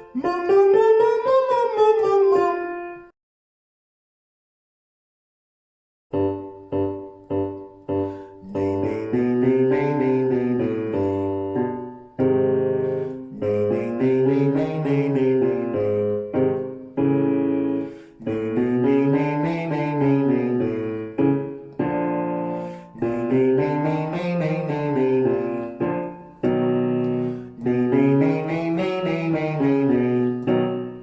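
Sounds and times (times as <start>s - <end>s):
piano vocal warm-up pattern: 0.0s - 3.1s, 6.1s - 31.0s.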